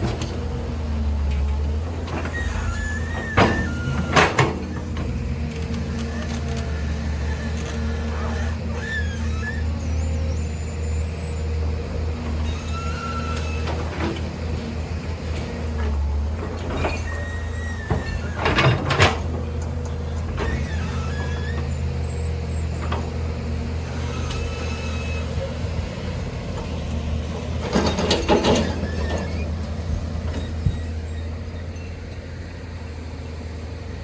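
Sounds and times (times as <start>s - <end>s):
heavy machinery engine running: 0.0s - 34.0s
short high squeaks: 2.2s - 14.0s, 16.8s - 18.8s, 20.4s - 25.5s, 28.2s - 32.1s.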